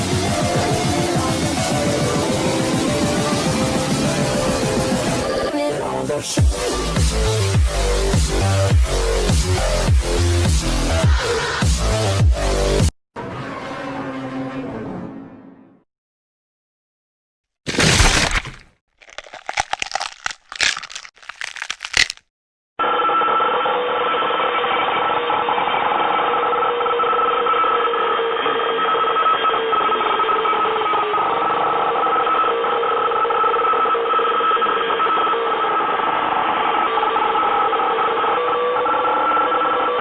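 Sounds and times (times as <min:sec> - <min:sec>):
sharp crashing bursts: 0:17.7 - 0:22.2.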